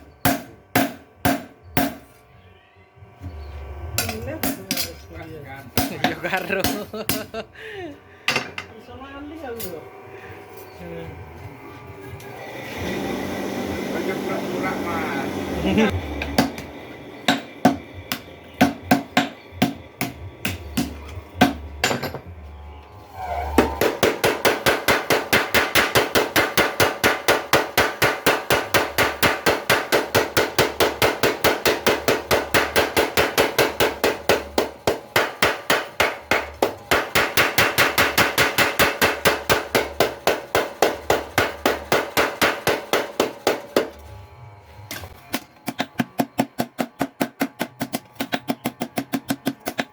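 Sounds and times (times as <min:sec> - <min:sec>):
power hammer striking: 0:00.0 - 0:02.1, 0:03.9 - 0:04.9, 0:05.8 - 0:07.4, 0:15.8 - 0:22.4, 0:23.5 - 0:44.2, 0:44.8 - 0:49.9.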